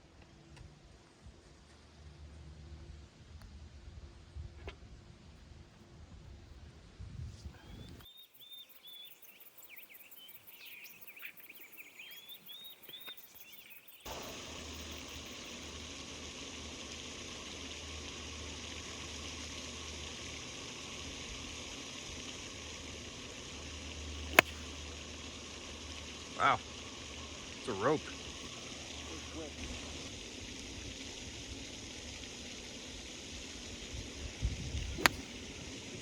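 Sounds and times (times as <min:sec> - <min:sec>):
steady outdoor noise: 0:00.0 - 0:36.0
songbird chirping: 0:07.6 - 0:15.7.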